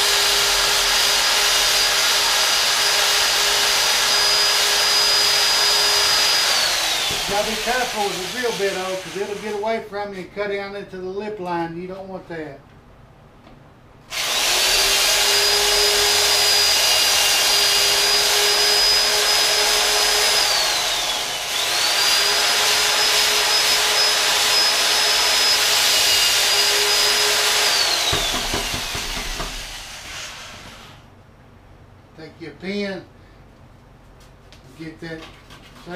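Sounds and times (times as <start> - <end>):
electric drill whine: 0.0 - 9.6, 14.1 - 31.1
drill bit cutting foam: 0.0 - 9.7, 14.1 - 31.1.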